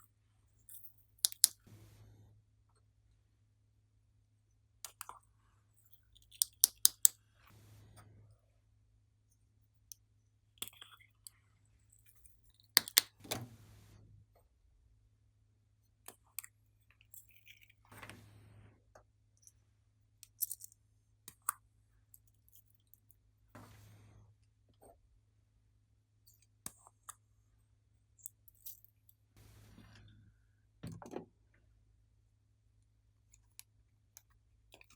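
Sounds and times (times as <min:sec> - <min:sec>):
slime clicking and popping: 0:01.3 - 0:01.6, 0:06.3 - 0:07.1, 0:12.8 - 0:13.2.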